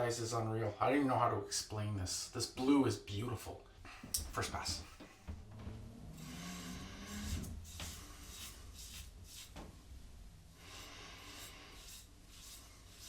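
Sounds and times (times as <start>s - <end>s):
razor scraping stubble: 6.2s - 9.6s.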